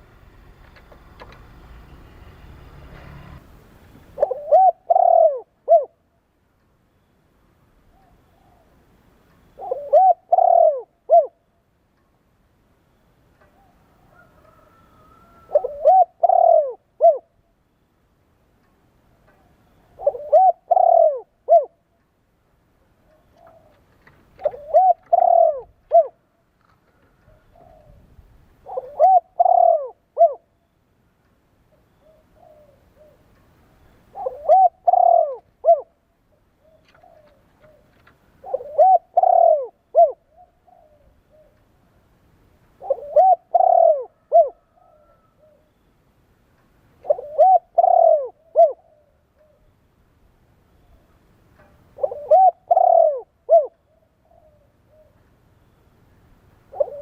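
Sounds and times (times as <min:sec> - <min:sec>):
dove cooing: 0:04.2 - 0:06.0, 0:07.9 - 0:08.8, 0:09.6 - 0:11.5, 0:13.5 - 0:17.4, 0:19.2 - 0:22.0, 0:23.0 - 0:30.6, 0:31.7 - 0:33.4, 0:34.1 - 0:42.0, 0:42.8 - 0:45.8, 0:47.0 - 0:49.8, 0:50.9 - 0:55.3, 0:56.7 - 0:57.0.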